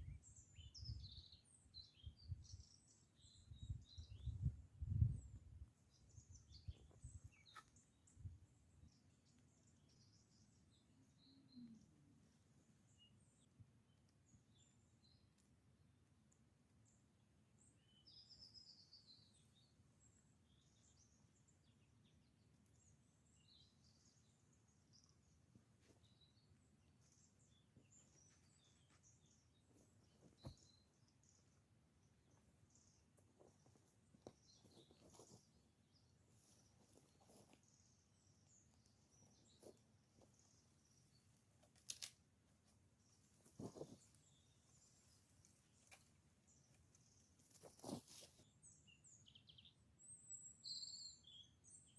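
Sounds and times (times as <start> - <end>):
birds chirping: 17.6 - 41.6.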